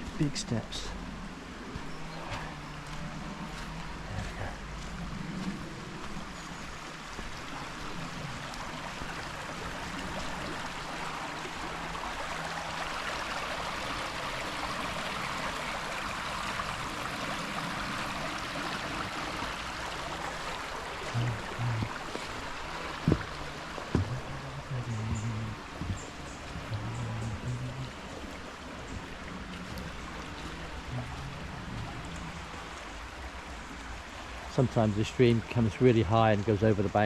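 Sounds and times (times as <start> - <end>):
stream water running: 0.0 - 37.0
short knocks: 23.0 - 24.3.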